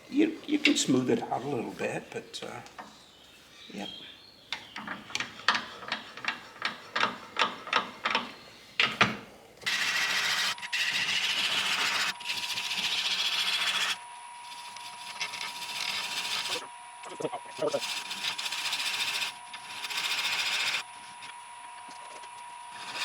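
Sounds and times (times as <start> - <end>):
thin steady whine: 3.6 - 23.0
lathe tool cutting wood: 9.6 - 16.6, 17.6 - 21.3, 22.6 - 23.0.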